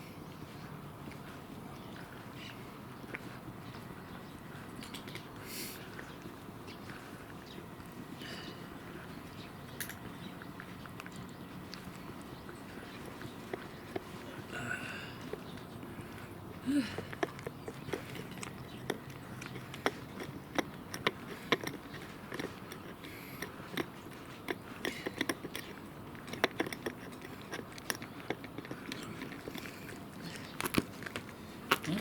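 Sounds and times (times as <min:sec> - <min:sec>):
cat chewing crunchy food: 0:16.9 - 0:32.0.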